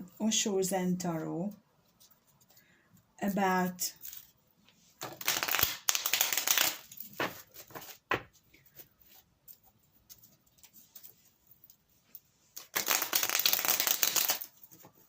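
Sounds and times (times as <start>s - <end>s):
cards shuffling: 5.0s - 11.2s, 12.6s - 15.0s.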